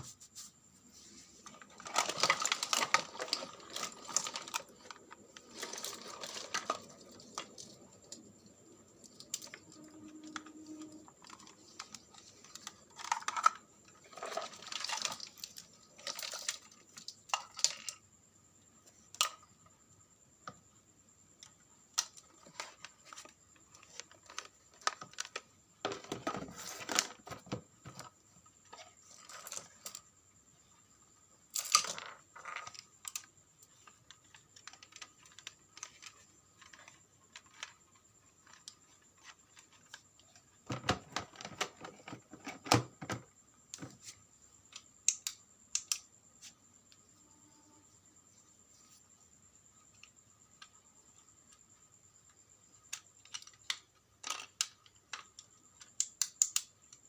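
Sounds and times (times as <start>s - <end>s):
faint high whine: 3.8s - 12.8s, 45.4s - 52.7s
hands clicking and tapping small parts: 43.7s - 47.0s, 52.8s - 57.0s.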